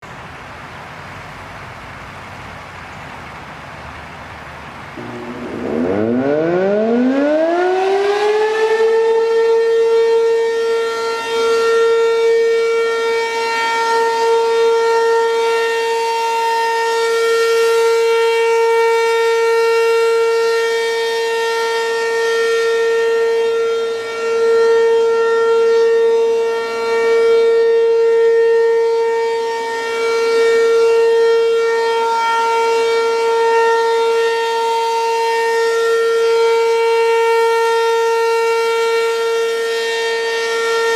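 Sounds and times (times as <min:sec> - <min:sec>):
warning siren winding up: 0:05.0 - 0:18.9.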